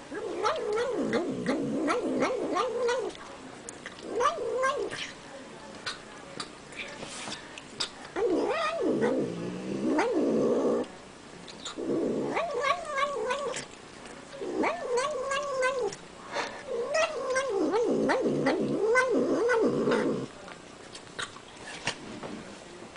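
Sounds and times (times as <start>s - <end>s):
cat yowling: 14.6s - 15.9s.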